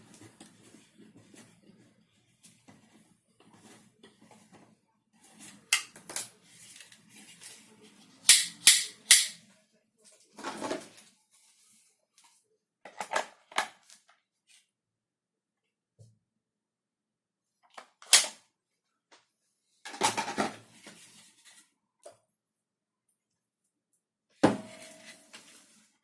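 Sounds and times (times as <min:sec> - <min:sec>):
plastic parts clicking: 0:08.3 - 0:09.4.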